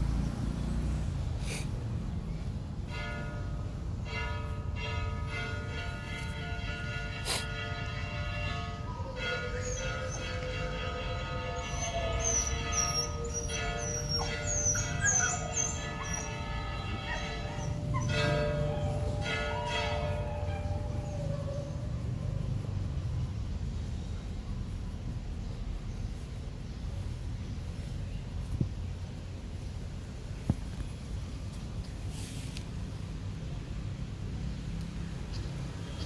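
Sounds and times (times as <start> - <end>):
church bells ringing: 2.8 - 22.6.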